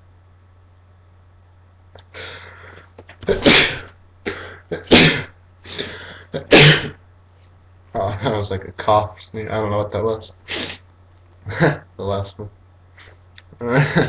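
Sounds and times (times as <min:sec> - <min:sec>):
noisy in-breath: 0:02.0 - 0:03.0, 0:04.2 - 0:04.7, 0:05.6 - 0:06.4, 0:10.5 - 0:10.8
man sneezing: 0:03.3 - 0:07.0.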